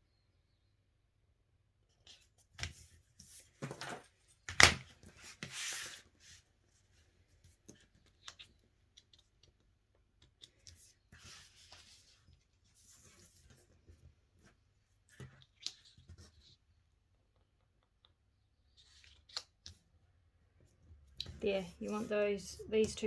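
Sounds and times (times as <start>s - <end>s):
card rustling and sliding: 2.1s - 6.4s, 21.3s - 22.9s.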